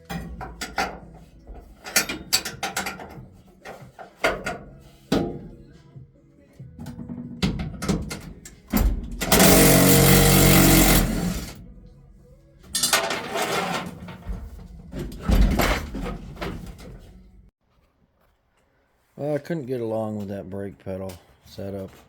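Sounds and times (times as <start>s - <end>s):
power tool cutting sheet metal: 9.2s - 11.7s.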